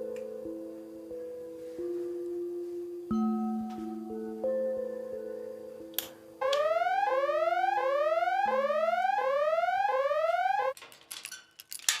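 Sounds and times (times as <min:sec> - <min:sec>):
electronic alarm whooping: 0:06.4 - 0:10.8.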